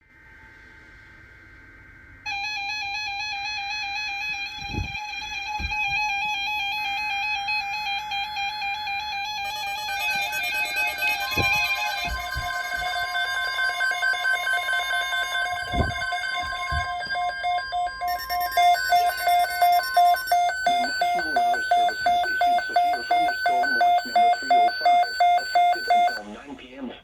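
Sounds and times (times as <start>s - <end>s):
emergency alert tones: 2.3s - 26.4s
loud rapid beeping: 7.9s - 26.2s.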